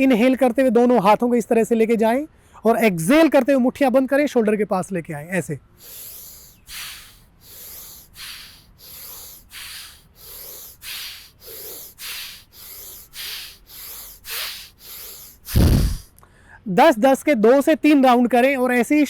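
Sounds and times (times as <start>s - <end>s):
forceful rhythmic breathing: 5.7s - 16.5s.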